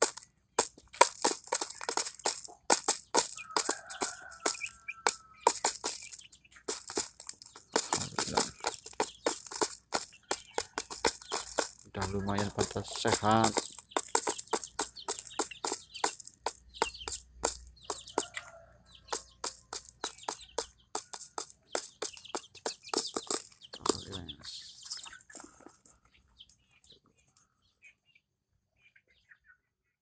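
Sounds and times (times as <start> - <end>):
chickens pecking grains: 0.0 - 28.1
chickens clucking softly: 17.9 - 19.7, 23.8 - 28.0.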